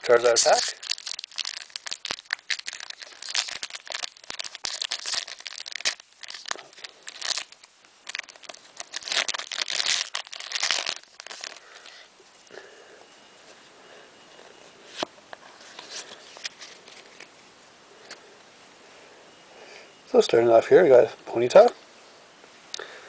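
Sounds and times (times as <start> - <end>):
foil wrapper crinkling and tearing: 0.0 - 12.1.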